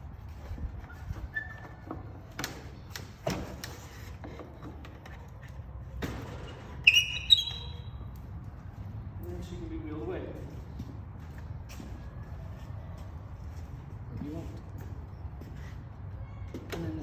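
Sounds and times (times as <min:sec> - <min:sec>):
short high squeaks: 0:00.9 - 0:02.0, 0:06.5 - 0:08.1.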